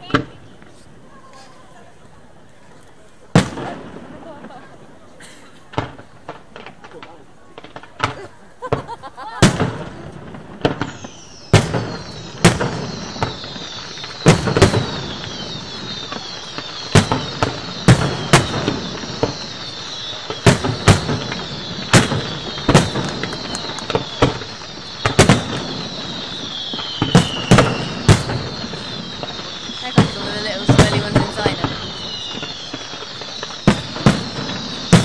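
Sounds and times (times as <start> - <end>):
firework crackle: 0.0 - 35.0
firework shells bursting: 7.6 - 35.0
whistles falling in pitch: 10.8 - 35.0.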